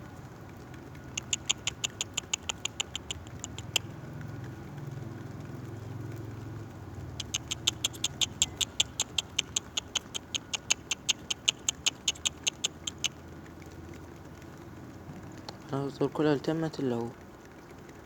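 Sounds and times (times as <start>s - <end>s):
bird chirping rapidly: 1.1s - 3.9s, 7.2s - 13.2s.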